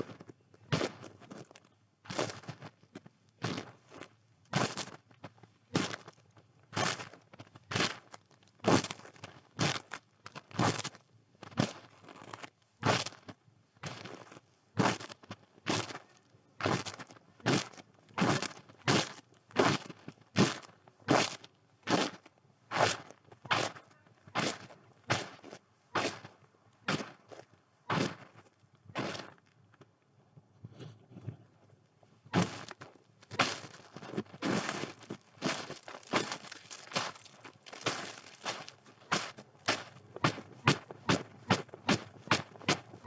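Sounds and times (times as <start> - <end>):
footsteps crunching in snow: 34.4 - 40.4.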